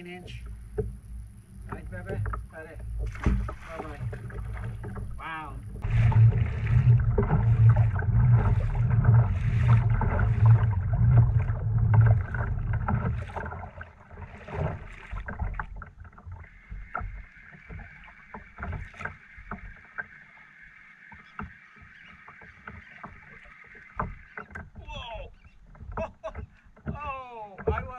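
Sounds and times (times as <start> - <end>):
rhythmic low thumps: 0.0 - 13.8.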